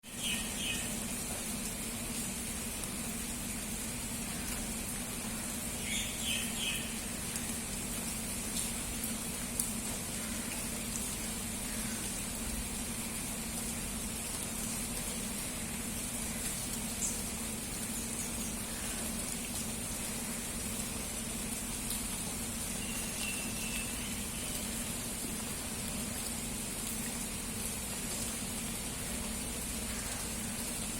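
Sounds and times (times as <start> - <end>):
steady rain pouring: 0.0 - 30.9
bird chirp: 5.8 - 7.0.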